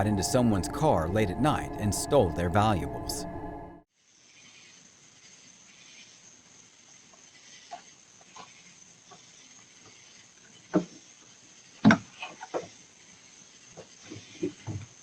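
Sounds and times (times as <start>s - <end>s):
thin high whine: 0.0s - 3.8s.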